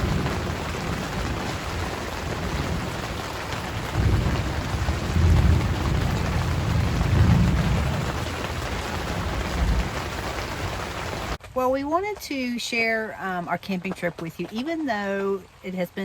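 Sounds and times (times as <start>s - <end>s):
thunder rumbling: 0.0s - 11.4s
pouring rain: 0.0s - 16.0s.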